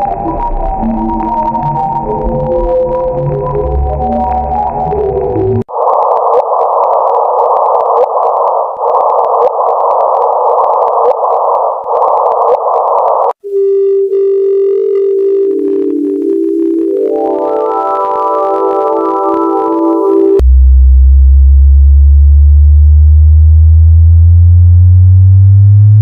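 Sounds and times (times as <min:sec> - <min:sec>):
held electronic tone: 0:00.0 - 0:22.4
loud electronic hiss with tone: 0:05.6 - 0:13.5
stepped synth notes: 0:15.0 - 0:20.4.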